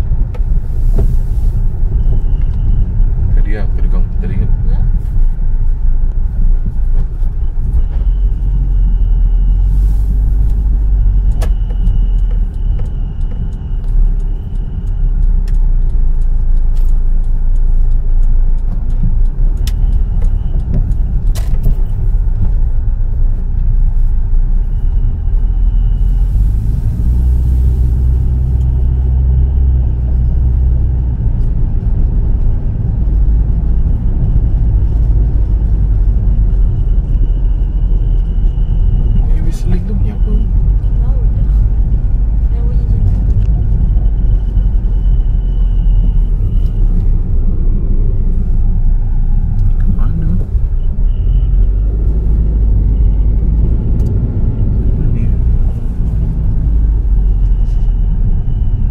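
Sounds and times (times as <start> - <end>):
car engine low rumble: 0.0 - 58.9.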